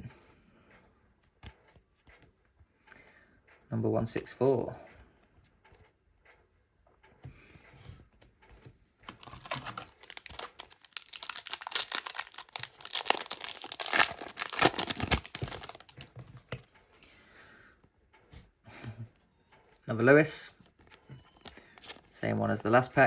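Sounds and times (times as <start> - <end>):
foil wrapper tearing and crinkling: 9.1 - 16.1, 21.4 - 22.2.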